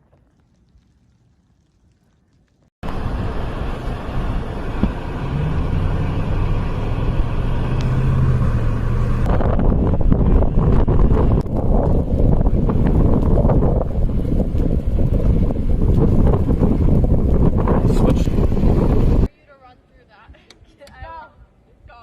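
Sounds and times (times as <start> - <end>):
vehicle engine running: 2.8 - 19.3.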